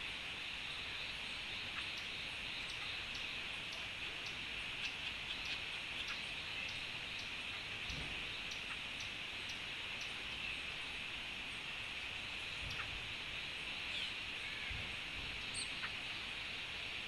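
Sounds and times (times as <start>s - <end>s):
bird chirps: 15.4s - 16.3s.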